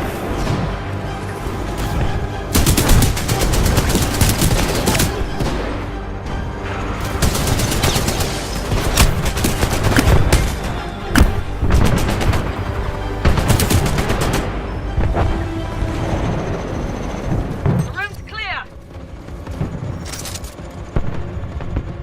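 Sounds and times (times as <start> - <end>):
music: 0.0 - 22.0
rapid automatic gunfire: 2.6 - 5.2.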